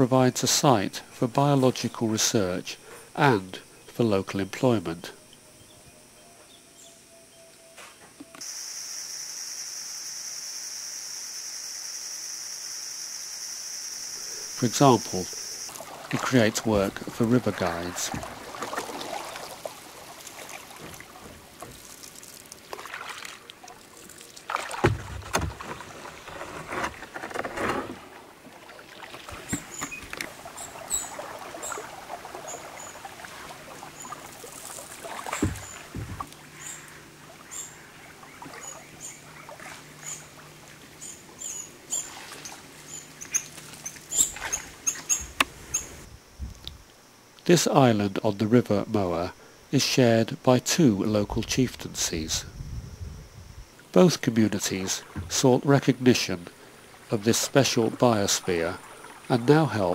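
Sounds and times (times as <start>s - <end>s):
faint steady low hum: 0.0s - 59.9s
water splashing and sloshing: 14.6s - 46.1s, 54.8s - 59.9s.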